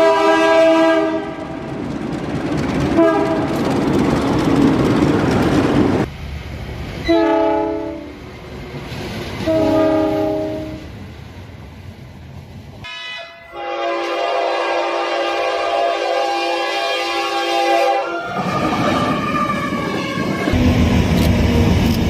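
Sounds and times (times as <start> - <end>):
locomotive horn blasts: 0.0 - 1.6, 3.0 - 3.5, 7.1 - 8.1, 9.4 - 10.8, 12.8 - 20.8
train rumble and wheel noise: 0.0 - 22.0.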